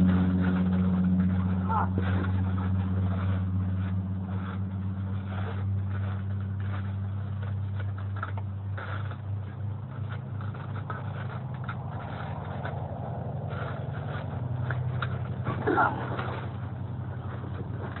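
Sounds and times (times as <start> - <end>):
low mechanical hum: 0.0 - 18.0.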